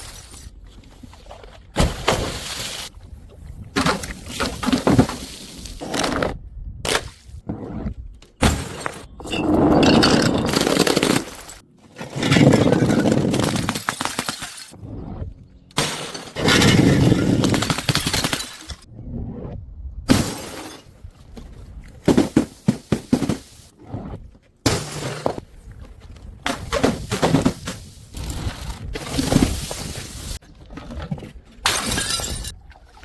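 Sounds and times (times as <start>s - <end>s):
glass bottles smashing: 8.4s - 14.8s, 31.7s - 32.5s.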